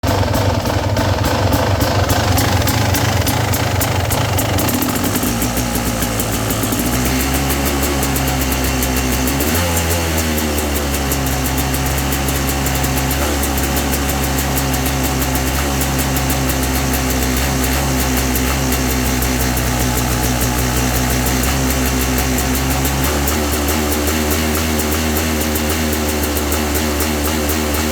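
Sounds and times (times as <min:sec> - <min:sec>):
dirt bike engine misfiring: 0:00.0 - 0:27.9.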